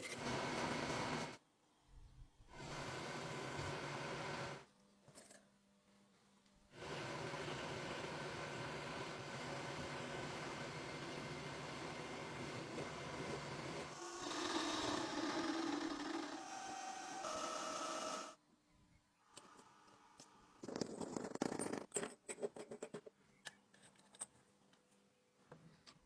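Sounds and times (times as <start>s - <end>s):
metalworking machine running: 13.9s - 18.4s.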